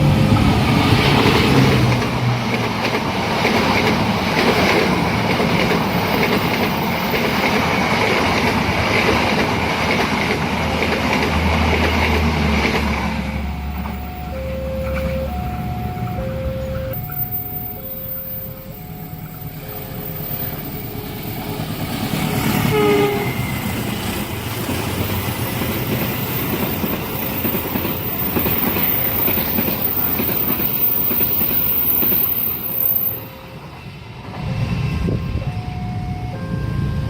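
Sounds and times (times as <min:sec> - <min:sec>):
train wheels clattering over rails: 0:00.0 - 0:17.6, 0:18.8 - 0:33.2
level-crossing alarm two tones: 0:13.2 - 0:21.7, 0:30.7 - 0:37.0
train horn blast: 0:22.6 - 0:23.6.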